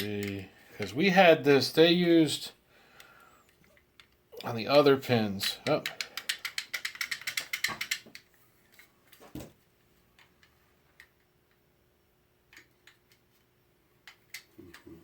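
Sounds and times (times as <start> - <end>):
rapid small mechanical clicks: 5.6 - 8.3.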